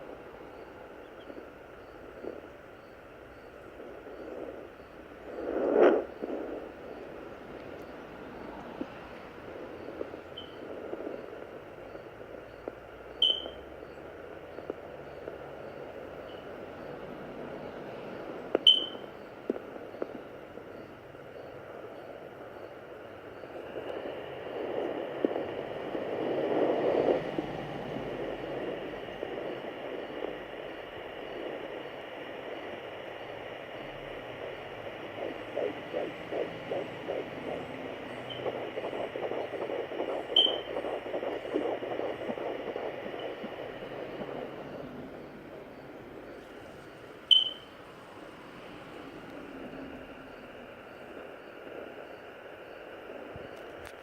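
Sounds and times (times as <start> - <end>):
static hiss: 0.0 - 54.0
whooshing heartbeat pulse: 3.2 - 12.8, 23.5 - 53.6
sharp clicks: 7.6 - 9.3, 33.7 - 50.0.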